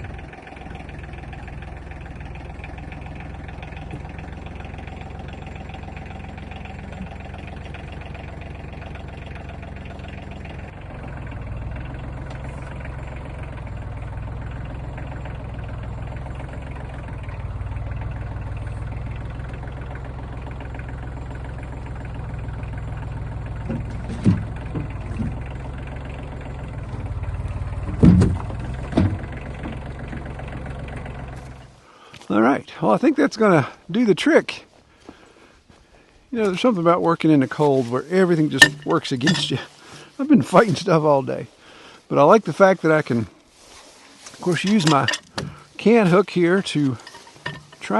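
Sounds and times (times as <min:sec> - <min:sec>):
tractor engine running: 0:00.0 - 0:47.9
sharp knocks: 0:27.8 - 0:29.8.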